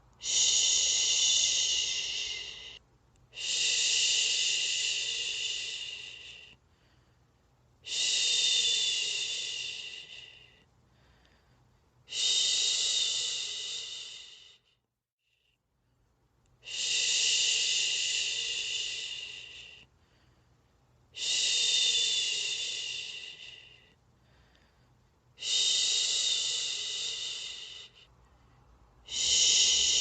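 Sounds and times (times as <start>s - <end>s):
person shushing: 0.0s - 2.8s, 29.1s - 30.0s.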